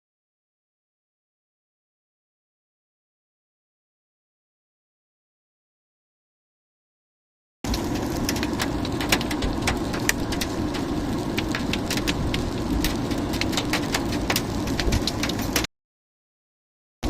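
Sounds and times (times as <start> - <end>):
heavy rain: 7.7 - 15.7
raindrops tapping hard surface: 7.7 - 15.7.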